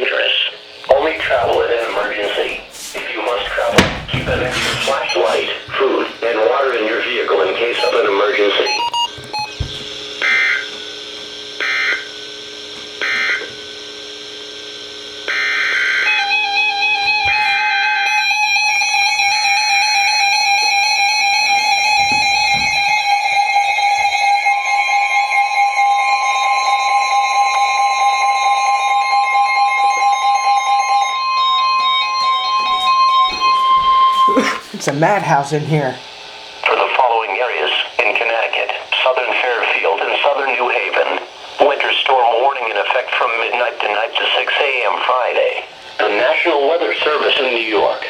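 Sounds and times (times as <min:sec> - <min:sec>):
continuous steady tones: 0:00.0 - 0:48.0
short stepping beeps: 0:31.5 - 0:34.4.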